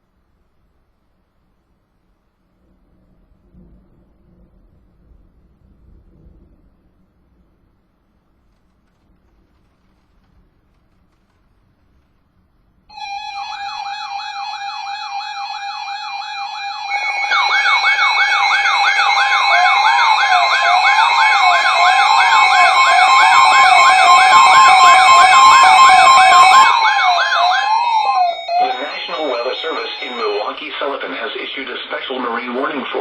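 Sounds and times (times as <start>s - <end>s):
slow rising and falling tone: 12.9s - 30.5s
fast wailing siren: 12.9s - 31.0s
steady alarm tone: 12.9s - 32.8s
steady high tones: 12.9s - 33.0s.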